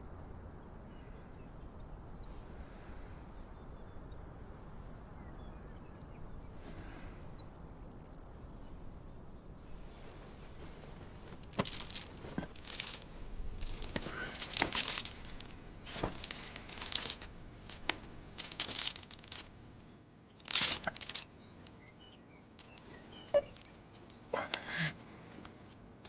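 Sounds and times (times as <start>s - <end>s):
rustling and crinkling: 4.8s - 24.3s.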